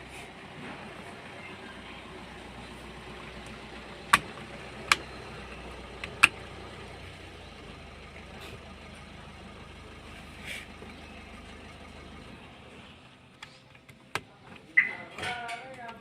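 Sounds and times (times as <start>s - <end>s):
sharp clicks: 3.4s - 5.1s.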